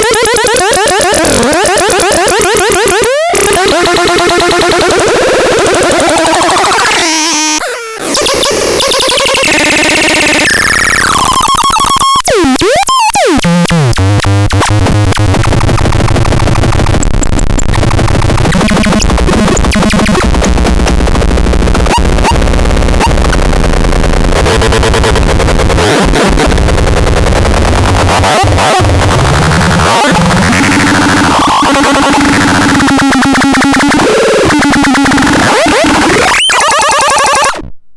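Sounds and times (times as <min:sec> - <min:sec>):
glitchy electronic noise music: 0:00.0 - 0:37.7
deep bass drone: 0:13.8 - 0:33.8.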